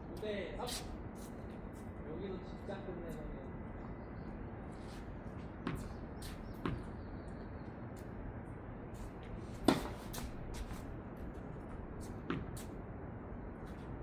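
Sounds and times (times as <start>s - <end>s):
tennis ball bouncing: 5.6s - 6.0s, 9.6s - 10.1s, 12.3s - 12.6s
racket striking tennis ball: 9.6s - 10.3s.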